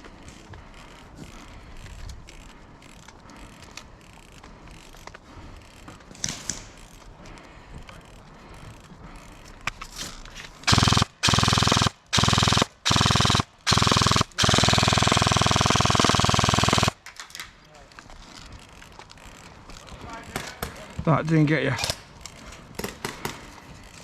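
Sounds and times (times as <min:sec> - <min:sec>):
airsoft gun firing bursts: 0:10.6 - 0:17.0.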